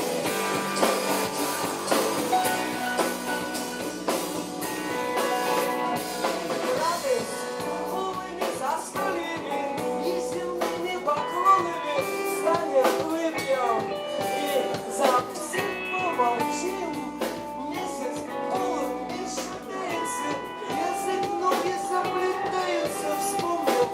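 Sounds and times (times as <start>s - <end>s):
person singing: 0.0s - 23.9s
rock music with drums and guitar: 0.0s - 23.9s.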